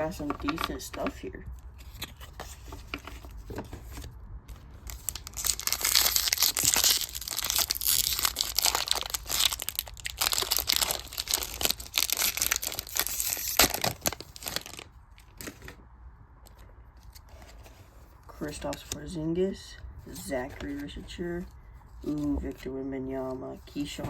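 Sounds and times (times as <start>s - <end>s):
wrapper tearing and crinkling: 4.8s - 15.7s.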